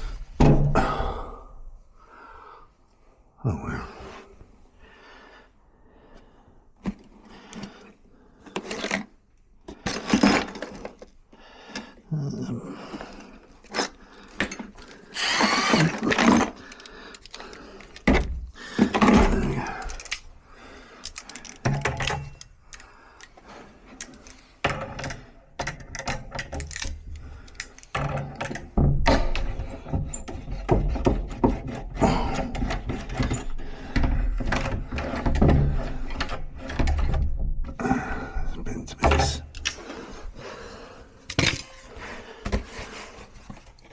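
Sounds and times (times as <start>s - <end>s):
tools and lock parts clicking: 13.2s - 37.4s, 39.0s - 39.9s, 41.3s - 41.9s.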